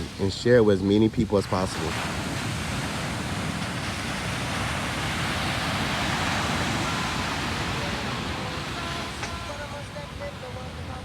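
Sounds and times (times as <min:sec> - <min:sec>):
ocean surf breaking on beach: 0:01.3 - 0:11.0.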